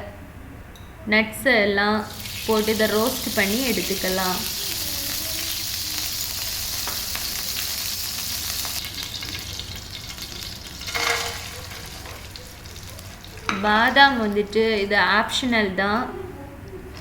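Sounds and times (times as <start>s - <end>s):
nuts sizzling in hot fat: 2.0s - 14.7s
spoon scraping a pan: 6.3s - 14.0s.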